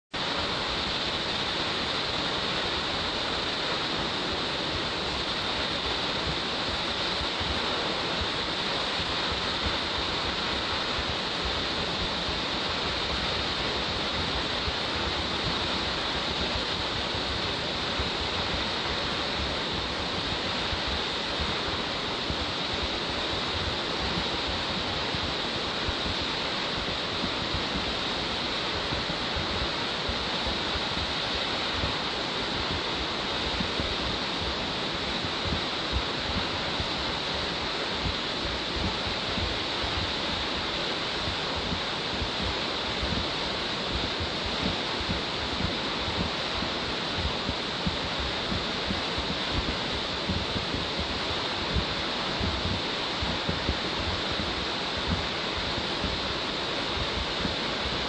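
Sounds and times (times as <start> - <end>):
waterfall rushing: 0.2 - 58.0.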